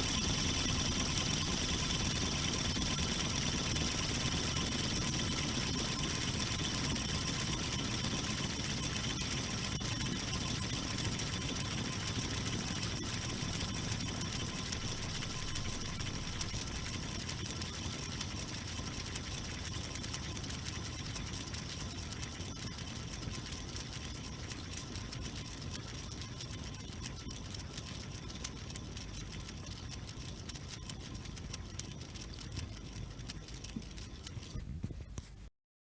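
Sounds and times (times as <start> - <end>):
spinner whirring with ticking: 0.0 - 35.4.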